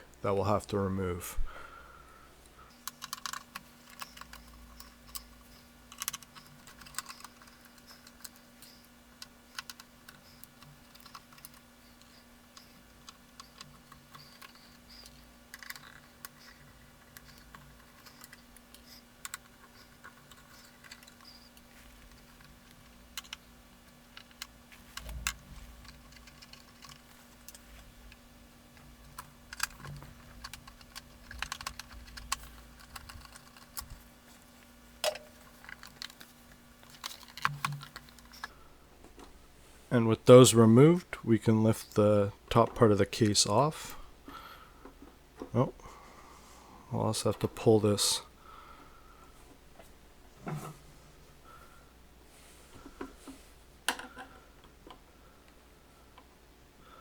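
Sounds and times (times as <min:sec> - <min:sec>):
faint steady hum: 0:00.0 - 0:57.0
screws and parts handled: 0:02.7 - 0:39.3.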